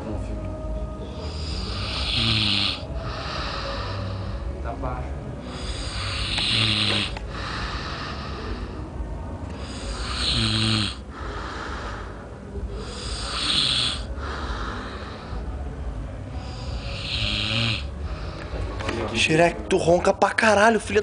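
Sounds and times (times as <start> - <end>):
quiet breathing: 0.0 - 19.2
man snoring loudly: 1.2 - 4.3, 5.5 - 8.4, 9.6 - 12.1, 12.8 - 15.4, 16.4 - 18.0.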